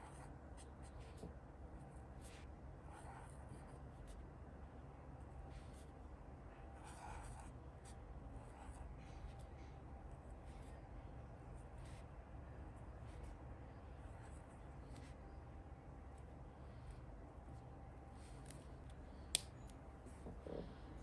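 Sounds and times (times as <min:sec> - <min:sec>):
low steady hum: 0:00.0 - 0:21.0
pen scratching on paper: 0:02.0 - 0:04.2, 0:06.8 - 0:10.9.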